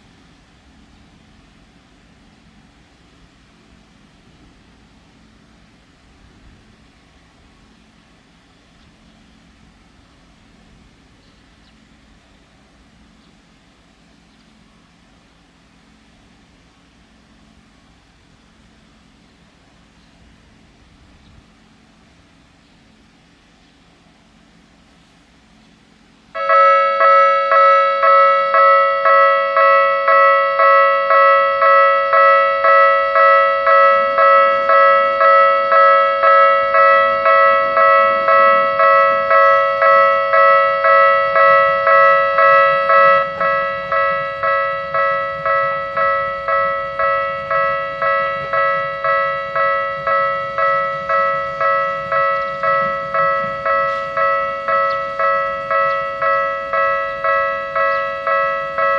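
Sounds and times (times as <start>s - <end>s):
level crossing alarm bell ringing: 26.4s - 58.9s.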